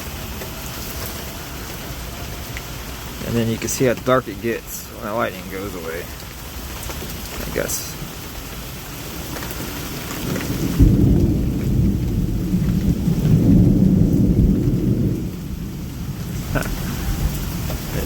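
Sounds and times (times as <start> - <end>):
steady rain: 0.0 - 18.0
thunder rumbling: 6.5 - 18.0.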